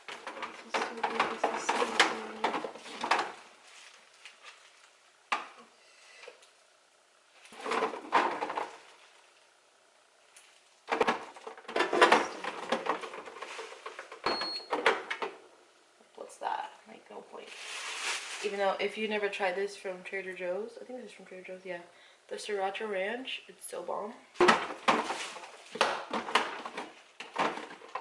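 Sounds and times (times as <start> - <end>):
jars and bottles clattering: 0.0 - 3.4, 10.9 - 15.1, 24.4 - 28.0.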